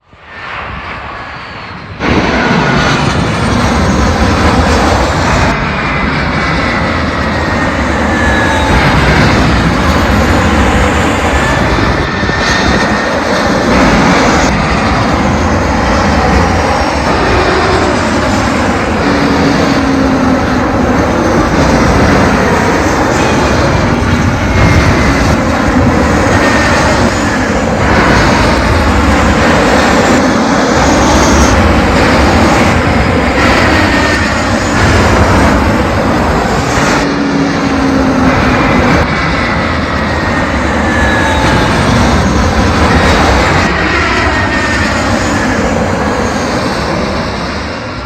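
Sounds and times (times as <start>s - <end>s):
jet airliner passing overhead: 0.0s - 48.0s.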